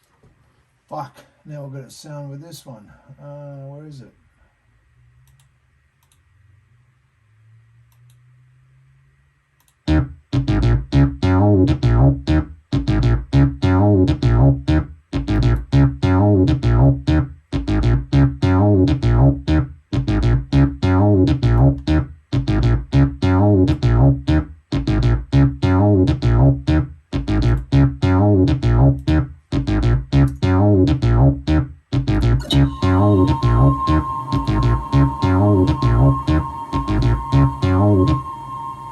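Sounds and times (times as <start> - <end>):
synthesizer bass notes: 9.9 - 38.9
faint low held tone: 32.4 - 38.9.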